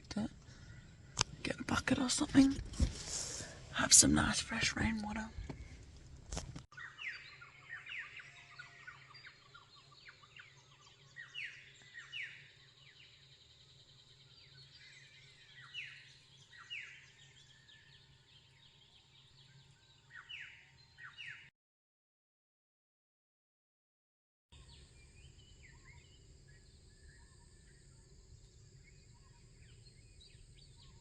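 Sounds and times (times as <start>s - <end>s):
small bird chirps: 6.7s - 21.5s, 24.6s - 31.0s.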